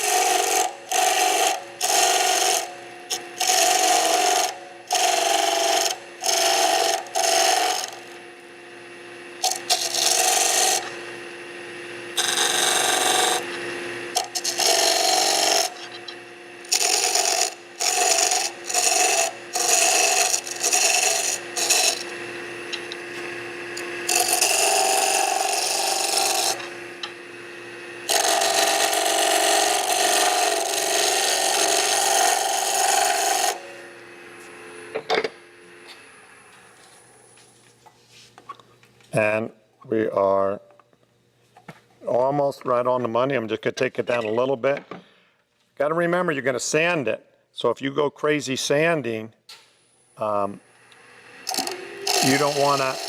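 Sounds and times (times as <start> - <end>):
turning tool scraping wood: 0.0 - 8.2, 9.4 - 11.0, 12.1 - 26.8, 28.0 - 34.6, 51.4 - 53.0
spinning lathe hum: 0.0 - 37.5, 50.2 - 53.0.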